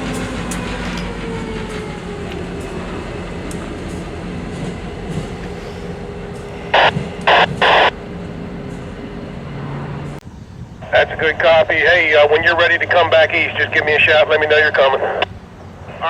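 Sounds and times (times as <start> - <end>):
train wheels rumbling on track: 0.0 - 10.3.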